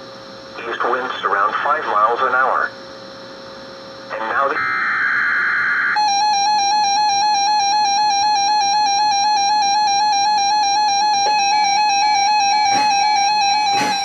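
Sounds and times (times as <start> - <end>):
piercing electronic attention tone: 4.1 - 14.0
warbling data-burst tones: 10.0 - 14.0.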